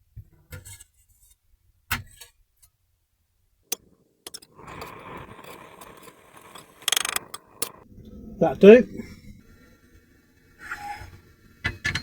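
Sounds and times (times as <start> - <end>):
garlic press rasping: 3.7 - 7.8
garlic press clicks: 6.9 - 7.7.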